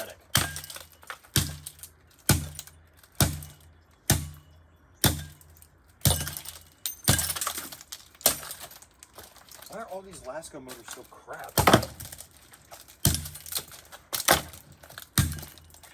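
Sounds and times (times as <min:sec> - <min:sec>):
heavy blows smashing a fan: 0:05.0 - 0:09.8, 0:10.8 - 0:15.9.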